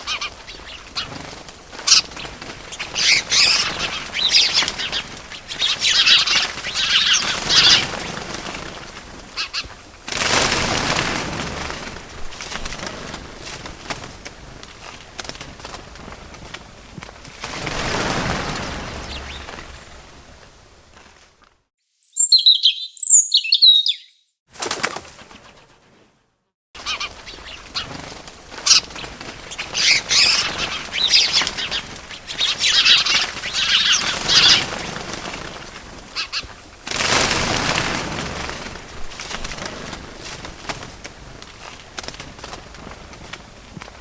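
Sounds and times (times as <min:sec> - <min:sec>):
bird wings flapping: 0:00.0 - 0:21.6, 0:24.5 - 0:26.1, 0:26.8 - 0:44.0
short high bird chirps: 0:21.8 - 0:24.4.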